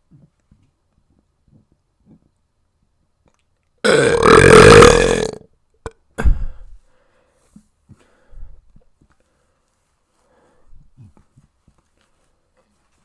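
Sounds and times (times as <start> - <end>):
person burping loudly: 3.8 - 6.0.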